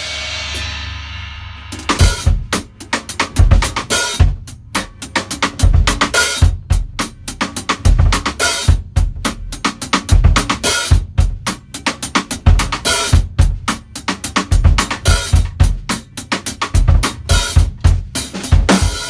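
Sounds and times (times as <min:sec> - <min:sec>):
drum kit playing busy beat: 0:00.0 - 0:19.0.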